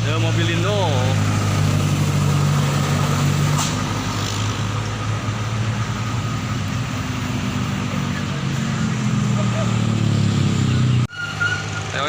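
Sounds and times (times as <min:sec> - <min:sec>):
bus engine droning: 0:00.0 - 0:12.0.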